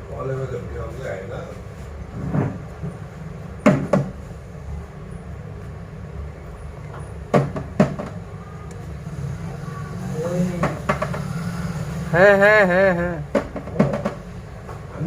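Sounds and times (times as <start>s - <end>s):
steady low hum: 0.0s - 15.0s
hard objects knocking: 3.6s - 4.2s, 7.3s - 8.2s, 10.5s - 11.4s, 13.2s - 14.8s.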